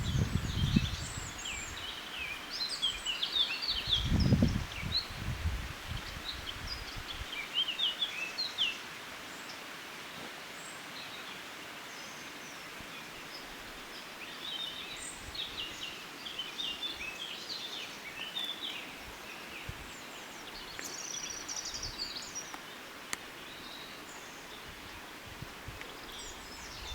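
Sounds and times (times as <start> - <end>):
outdoor hiss: 0.0 - 26.9
songbirds chirping and singing: 25.8 - 26.9.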